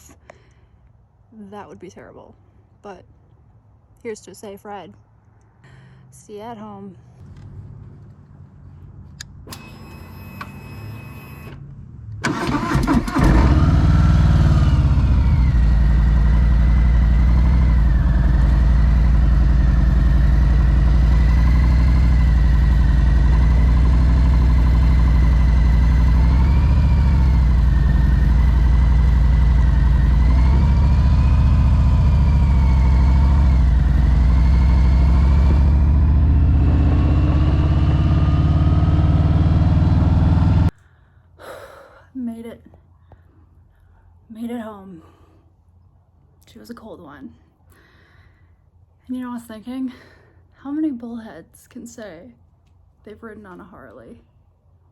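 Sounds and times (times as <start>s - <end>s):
motorcycle engine starting and running: 9.0s - 40.8s.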